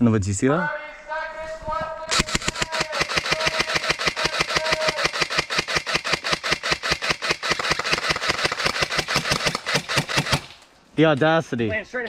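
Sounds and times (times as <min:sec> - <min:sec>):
fast mechanical rattle of clicks: 0:02.1 - 0:10.6.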